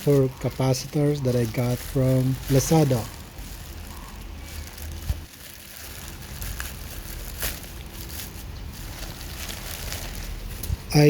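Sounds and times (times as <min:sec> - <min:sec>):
low steady hum: 0:00.0 - 0:11.0
packaging rustling: 0:00.0 - 0:11.0.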